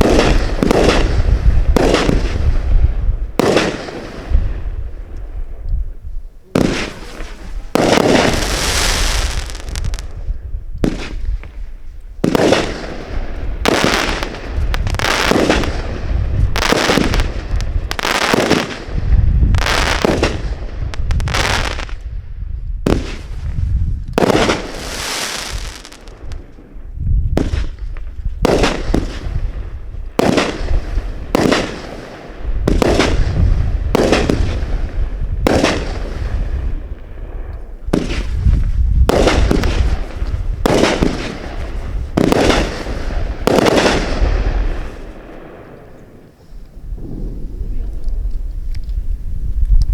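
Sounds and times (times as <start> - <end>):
hiss of fireworks: 0.0 - 2.6, 3.4 - 4.8, 6.4 - 22.0, 24.2 - 26.6, 27.4 - 49.6
firework shells bursting: 10.8 - 18.8, 37.0 - 49.0.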